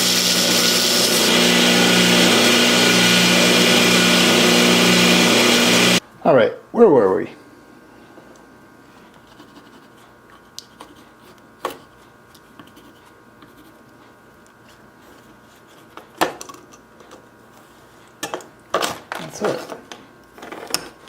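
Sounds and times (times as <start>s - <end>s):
pencil scratching: 9.3s - 10.0s.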